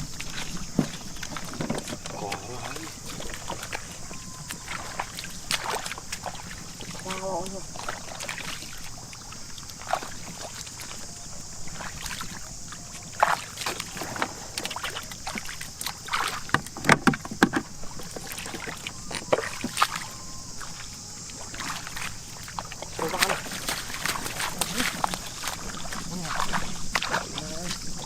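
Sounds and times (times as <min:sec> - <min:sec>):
shallow water splashing: 0:00.0 - 0:28.0.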